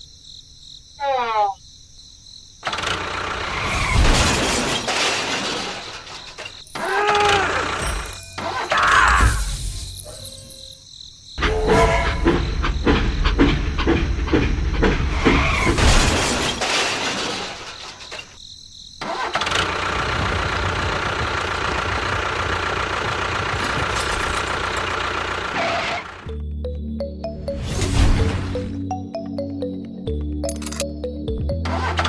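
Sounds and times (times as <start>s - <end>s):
vehicle engine starting and running: 2.6s - 4.7s, 11.4s - 16.7s, 19.0s - 26.3s, 31.7s - 32.0s.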